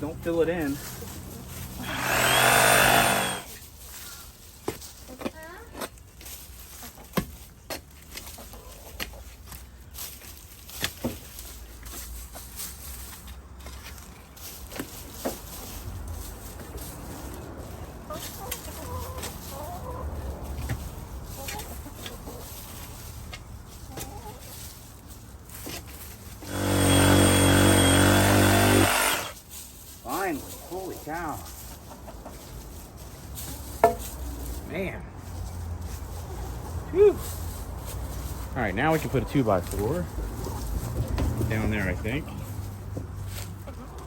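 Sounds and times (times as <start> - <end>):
power tool humming and whining: 1.8 - 3.5, 26.4 - 29.4
shovel digging into dirt: 26.5 - 29.4.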